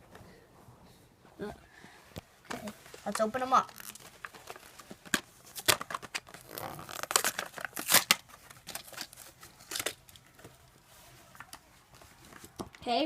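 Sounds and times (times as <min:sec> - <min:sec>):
plastic crinkling: 0:02.5 - 0:12.6
cardboard ripping: 0:03.6 - 0:10.0.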